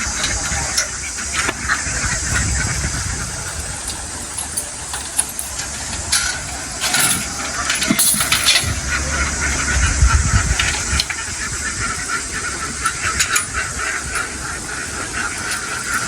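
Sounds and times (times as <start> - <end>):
engine low rumble: 0.0 - 16.0.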